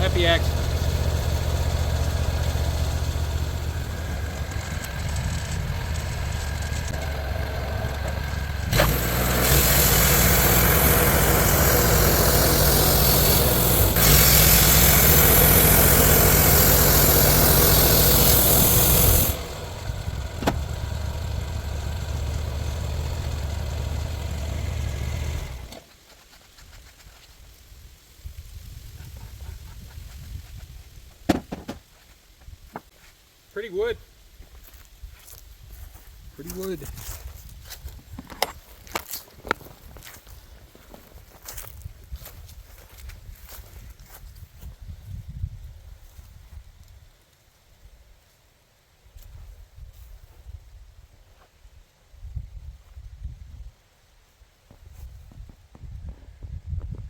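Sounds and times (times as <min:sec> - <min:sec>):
band saw blade cutting log: 0:00.0 - 0:25.8
sawmill engine hum: 0:00.0 - 0:25.8.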